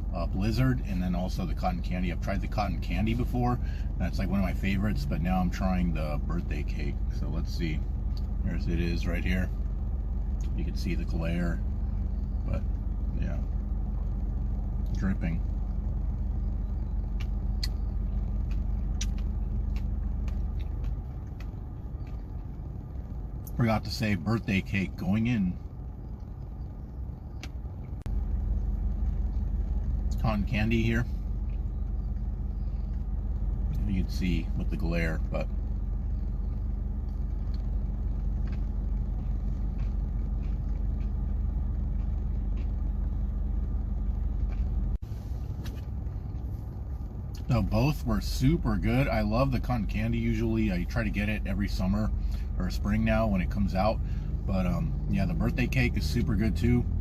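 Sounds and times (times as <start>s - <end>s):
car engine rumbling: 0.0s - 57.0s
light clicks and taps: 17.1s - 22.6s.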